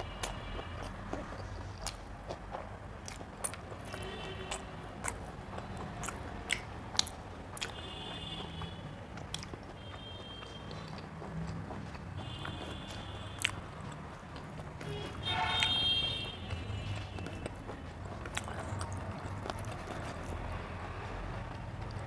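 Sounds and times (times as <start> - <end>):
person chewing food: 0.0 - 22.0
wet mouth clicks and smacks: 0.2 - 15.8, 16.5 - 20.8.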